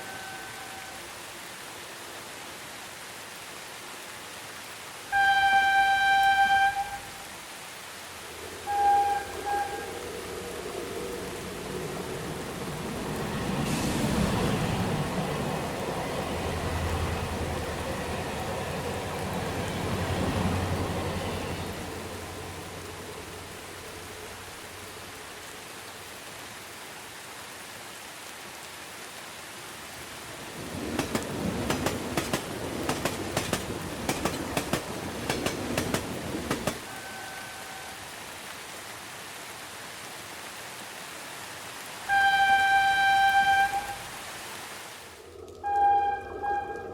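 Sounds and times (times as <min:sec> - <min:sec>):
train horn: 0:00.0 - 0:01.1, 0:05.1 - 0:07.3, 0:08.6 - 0:10.1, 0:36.8 - 0:38.2, 0:42.0 - 0:44.2, 0:45.6 - 0:46.9
rain hiss: 0:00.0 - 0:46.9
train rumbling on rails: 0:08.2 - 0:24.9, 0:30.1 - 0:38.0
wheel clacks over rail joints: 0:30.9 - 0:36.8.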